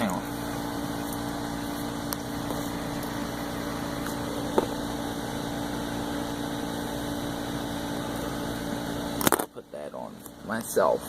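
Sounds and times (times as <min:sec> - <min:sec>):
freezer compressor humming: 0:00.0 - 0:11.0.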